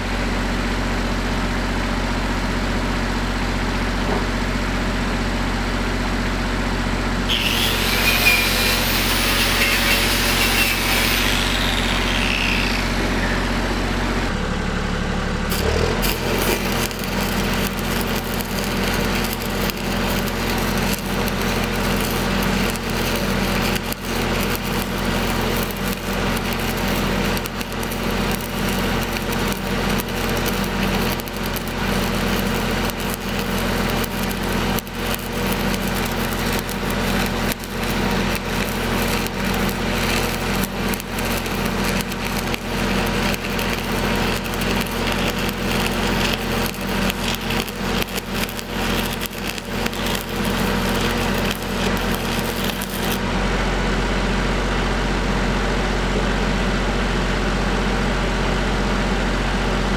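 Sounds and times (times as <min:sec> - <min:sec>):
welder engine running: 0:07.0 - 0:54.4
welding arc crackling and sizzling: 0:07.3 - 0:13.3, 0:15.5 - 0:53.2.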